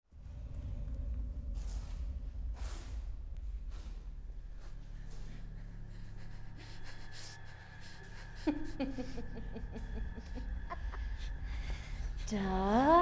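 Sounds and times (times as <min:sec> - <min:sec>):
low hum: 0:00.0 - 0:13.0
person breathing hard: 0:04.4 - 0:13.0.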